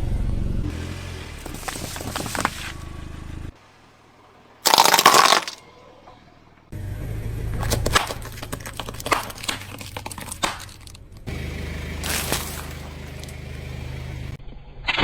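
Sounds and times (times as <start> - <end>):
car engine running: 0.0 - 4.5, 6.6 - 14.4
tyres crushing plastic toys: 1.4 - 2.7, 4.6 - 5.6, 7.6 - 11.3, 12.0 - 13.3.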